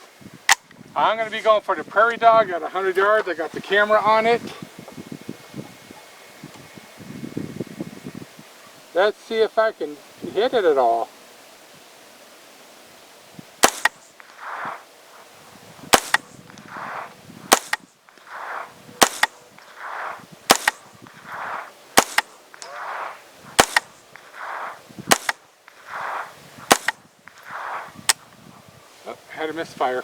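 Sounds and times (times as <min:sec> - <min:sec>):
rifle shots: 0:13.6 - 0:14.8, 0:15.9 - 0:28.2.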